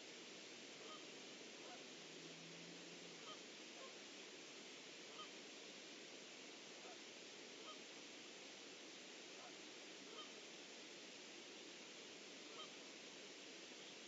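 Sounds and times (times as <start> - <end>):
steady low hiss: 0.0 - 14.0
faint short bird calls: 12.5 - 12.8.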